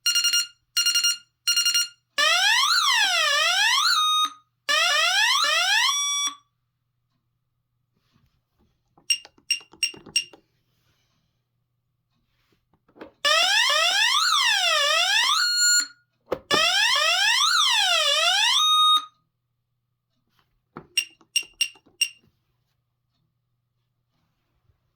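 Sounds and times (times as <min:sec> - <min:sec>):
alarm siren sweeping tone: 0:13.2 - 0:15.9, 0:16.5 - 0:19.1
short beeps: 0:21.0 - 0:22.2.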